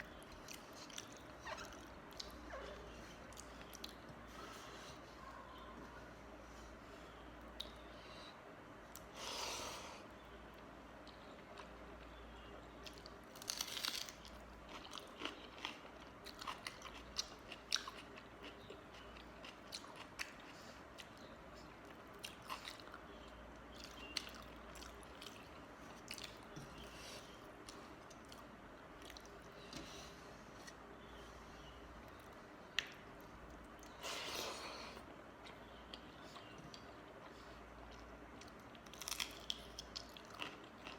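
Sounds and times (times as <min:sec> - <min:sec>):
person chewing crunchy food: 0:12.8 - 0:21.3, 0:33.8 - 0:40.9.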